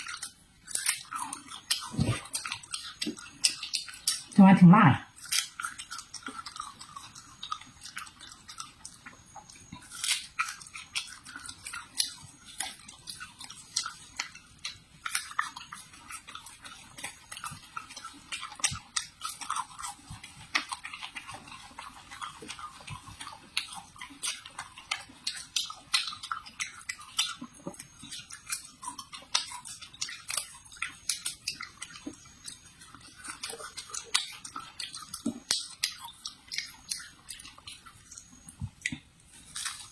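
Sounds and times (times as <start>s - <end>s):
wet mouth clicks: 0.0s - 4.4s, 5.1s - 39.9s
crunchy chewing: 0.0s - 39.9s.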